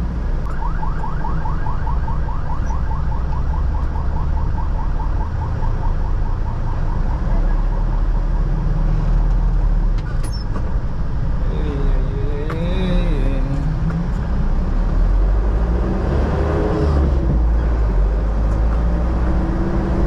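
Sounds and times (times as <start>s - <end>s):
road noise: 0.0s - 20.0s
vehicle engine rumble: 0.0s - 20.0s
electronic siren whooping: 0.4s - 7.2s.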